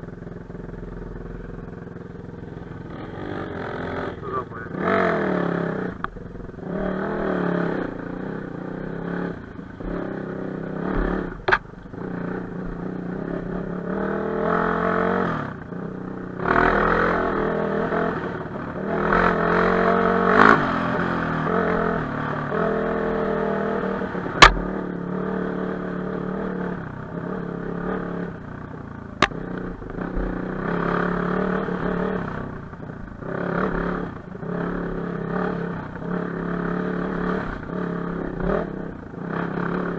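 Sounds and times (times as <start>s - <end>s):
motorcycle engine revving: 0.0s - 39.9s
sharp knocks: 24.4s - 24.7s.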